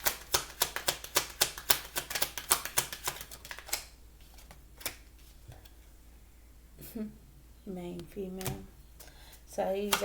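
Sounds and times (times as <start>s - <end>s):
cards being shuffled: 0.0s - 5.8s.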